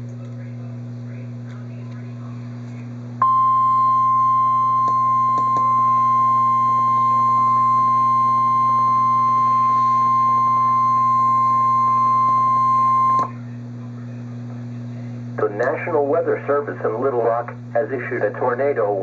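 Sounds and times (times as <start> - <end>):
low electrical hum: 0.0 - 19.0
steady high warning beep: 3.2 - 13.3.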